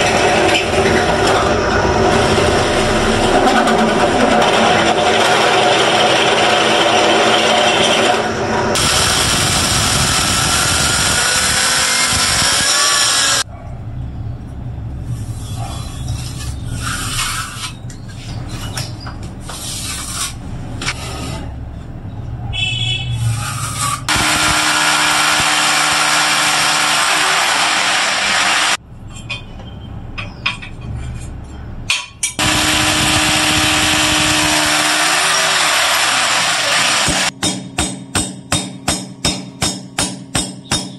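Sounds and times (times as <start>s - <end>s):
power tool running: 0.0s - 13.4s, 24.1s - 28.8s, 32.4s - 37.3s.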